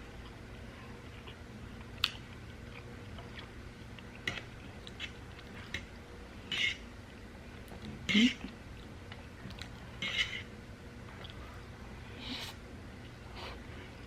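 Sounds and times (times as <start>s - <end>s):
person chewing food: 1.0s - 5.9s, 7.6s - 10.4s.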